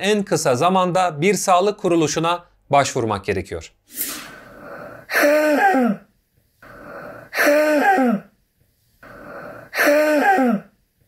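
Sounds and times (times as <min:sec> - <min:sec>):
rasping in-breath: 0:03.9 - 0:05.5, 0:06.6 - 0:07.8, 0:08.9 - 0:10.6
child's barking cough: 0:05.1 - 0:06.0, 0:07.4 - 0:08.3, 0:09.8 - 0:10.7.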